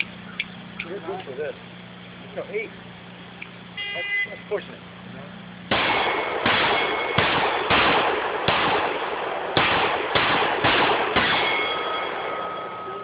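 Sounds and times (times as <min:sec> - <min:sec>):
steel plate ringing: 0:05.7 - 0:07.7, 0:11.0 - 0:13.0
pistol shots echoing: 0:05.7 - 0:12.8.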